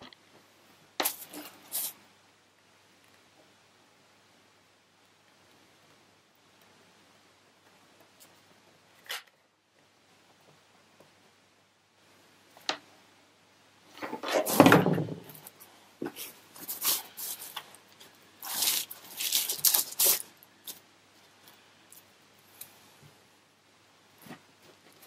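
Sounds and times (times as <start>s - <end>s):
rustling and scraping: 1.0s - 2.0s, 13.9s - 23.2s, 24.2s - 25.0s.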